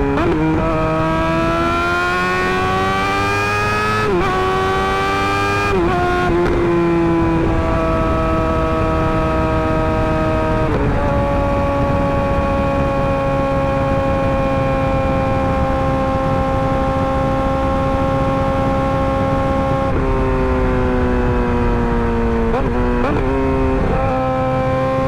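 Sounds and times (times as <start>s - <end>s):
motorcycle engine under steady throttle: 0.0s - 25.0s.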